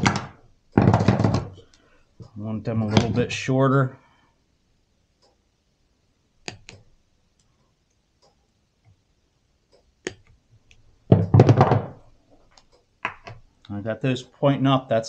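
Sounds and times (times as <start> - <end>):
hand tools clicking and knocking: 0.0 - 1.6.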